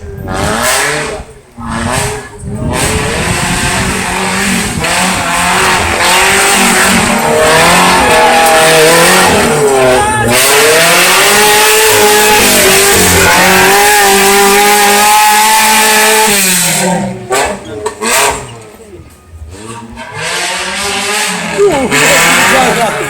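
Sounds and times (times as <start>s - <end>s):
off-road vehicle engine revving: 0.0s - 23.0s.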